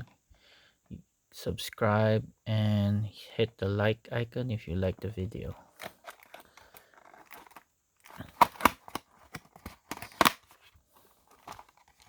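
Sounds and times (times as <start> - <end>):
packaging crinkling and clicking: 5.7 - 12.0.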